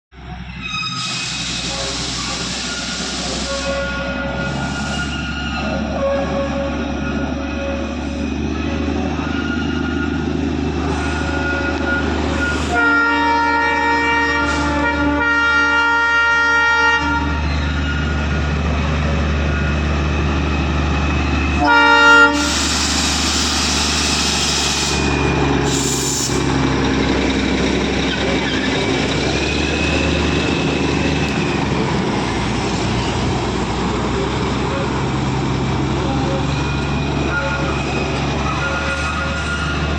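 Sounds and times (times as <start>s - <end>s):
low train running rumble: 0.1s - 39.9s
loud hiss: 1.0s - 3.8s, 22.4s - 26.6s
train horn blasts: 1.6s - 8.1s, 10.9s - 18.1s, 21.6s - 22.9s, 37.2s - 39.8s.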